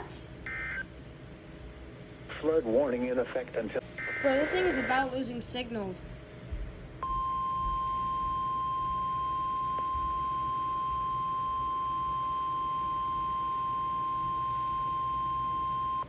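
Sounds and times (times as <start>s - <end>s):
steady high alarm tone: 4.0s - 5.6s, 7.0s - 16.0s.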